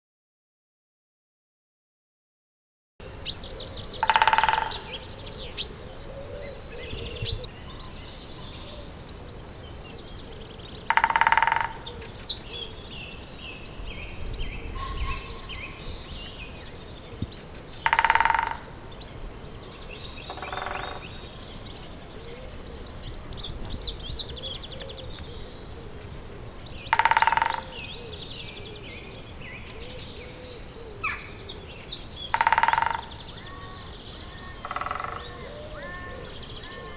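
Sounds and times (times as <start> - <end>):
songbirds chirping and singing: 3.0 - 36.9
woodpecker drumming: 4.0 - 5.2, 10.8 - 12.4, 17.5 - 19.0, 20.3 - 21.2, 26.8 - 28.0, 32.2 - 33.7, 34.6 - 35.4.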